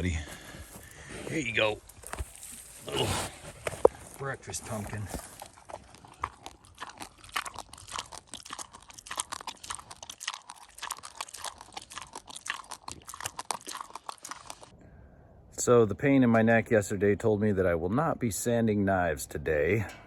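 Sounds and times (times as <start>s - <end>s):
pig crunching pumpkin: 0.0s - 14.8s.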